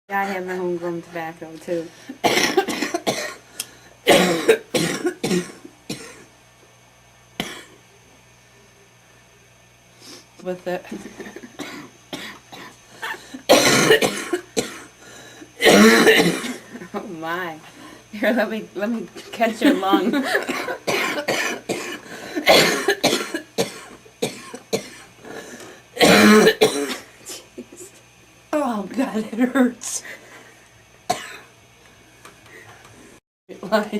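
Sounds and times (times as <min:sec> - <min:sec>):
person coughing harshly: 0:02.2 - 0:03.4, 0:04.1 - 0:06.3, 0:07.4 - 0:07.8, 0:11.4 - 0:15.0, 0:15.6 - 0:16.8, 0:19.2 - 0:25.1, 0:26.0 - 0:27.5, 0:31.1 - 0:31.5.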